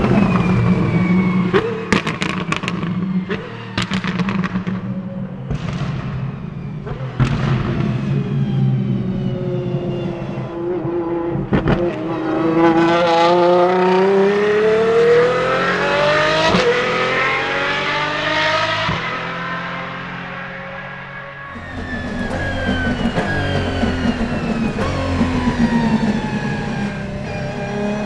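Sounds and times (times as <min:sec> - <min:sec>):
car engine accelerating: 0:21.5 - 0:28.0
sharp exhaust cracks: 0:21.5 - 0:28.0.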